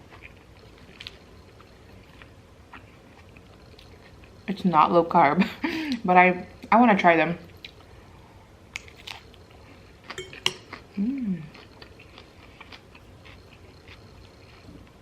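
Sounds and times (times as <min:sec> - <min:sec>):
utensil clinking against dish: 0:10.2 - 0:10.7
person humming: 0:11.0 - 0:11.5.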